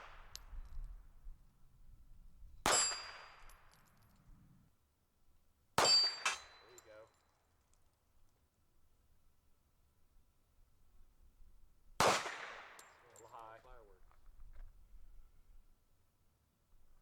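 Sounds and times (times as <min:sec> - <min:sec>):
metallic ring of steel target: 0:02.7 - 0:03.7, 0:05.8 - 0:06.8
gunshots: 0:12.0 - 0:12.8.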